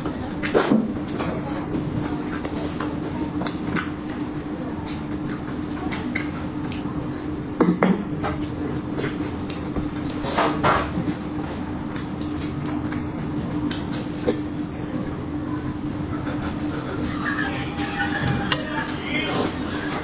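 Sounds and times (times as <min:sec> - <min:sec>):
steady low hum: 0:00.0 - 0:20.0
dishes and utensils clinking: 0:16.1 - 0:20.0.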